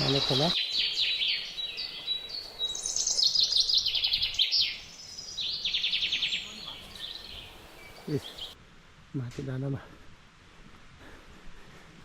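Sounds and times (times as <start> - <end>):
songbird chirping and trilling: 0.0 - 8.6.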